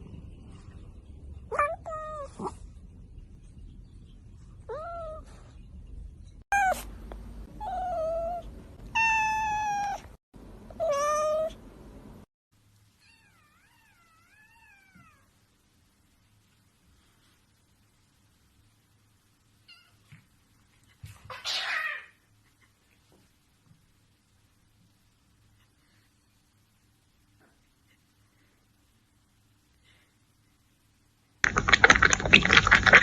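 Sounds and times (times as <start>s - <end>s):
cat meowing: 7.6s - 10.0s.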